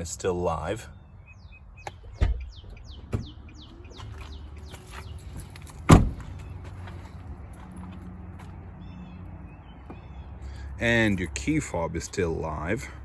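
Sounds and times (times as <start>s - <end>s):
bird chirping: 0.8s - 6.6s, 8.8s - 10.7s
liftgate latch clicks and clunks: 1.8s - 2.5s, 5.8s - 6.2s.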